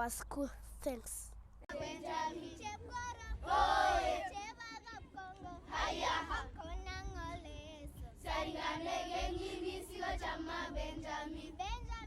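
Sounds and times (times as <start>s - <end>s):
children singing together: 1.7s - 7.2s, 8.2s - 11.7s.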